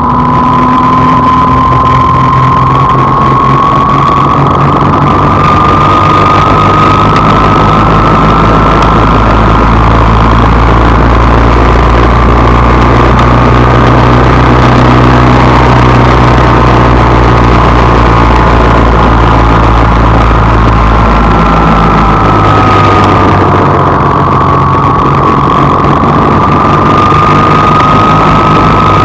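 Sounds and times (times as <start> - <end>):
vehicle engine running with whine: 0.0 - 29.0.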